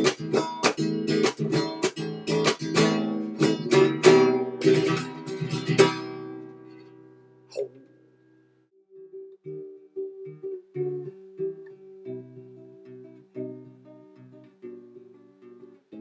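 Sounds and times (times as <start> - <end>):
flamenco acoustic guitar strumming: 0.0 - 8.4.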